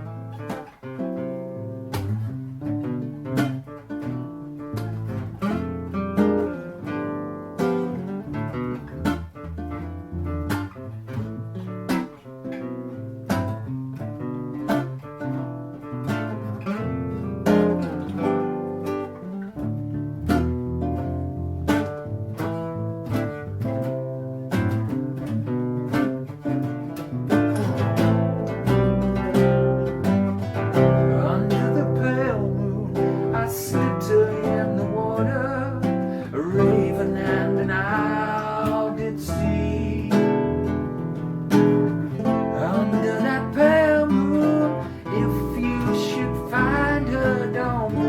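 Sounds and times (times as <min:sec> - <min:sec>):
acoustic guitar strumming chords: 0:00.0 - 0:48.0
low bass line: 0:27.0 - 0:48.0.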